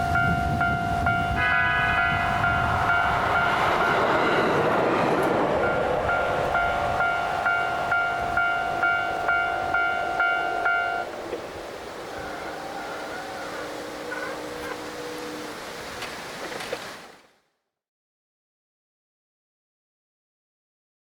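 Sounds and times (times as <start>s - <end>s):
level crossing warning bell: 0.0s - 4.7s, 5.6s - 11.1s, 12.1s - 15.4s
train running over rails: 0.0s - 16.7s.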